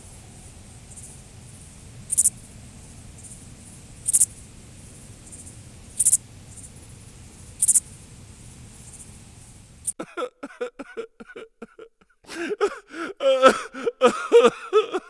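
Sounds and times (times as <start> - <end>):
faint chirps: 0.0 - 10.0
grasshopper buzzy stridulation: 0.0 - 10.0
low background noise: 0.0 - 12.0.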